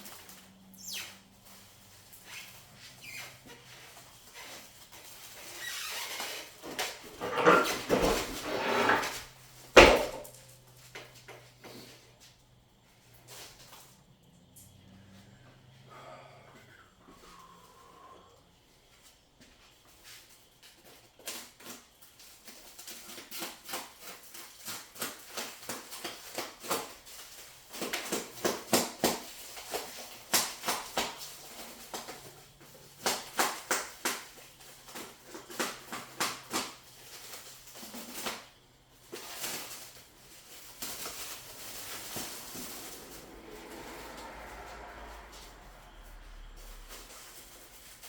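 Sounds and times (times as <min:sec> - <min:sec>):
packaging crackling and rustling: 0:20.8 - 0:48.0.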